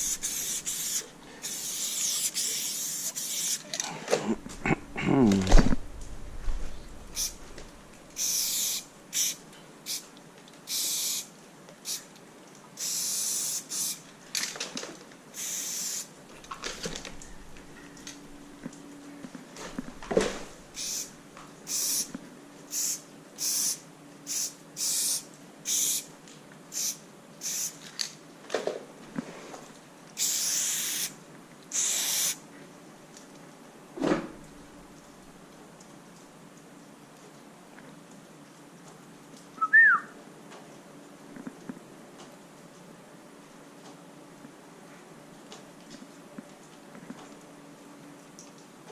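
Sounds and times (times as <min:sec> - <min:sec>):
spray paint can hissing: 0:00.0 - 0:03.7, 0:07.2 - 0:07.4, 0:08.2 - 0:10.1, 0:10.7 - 0:12.0, 0:12.8 - 0:14.0, 0:15.3 - 0:16.1, 0:20.8 - 0:21.1, 0:21.7 - 0:22.1, 0:22.7 - 0:26.1, 0:26.7 - 0:27.8, 0:30.2 - 0:31.1, 0:31.7 - 0:32.4.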